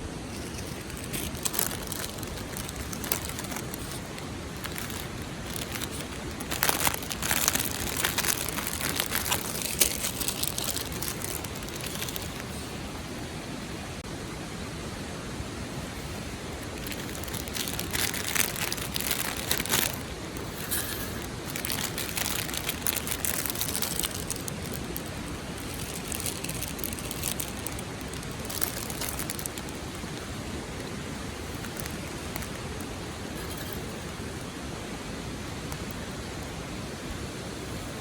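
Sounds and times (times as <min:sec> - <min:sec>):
crackling and rustling: 0:00.0 - 0:14.1, 0:15.6 - 0:36.6
river water rushing: 0:00.0 - 0:38.0.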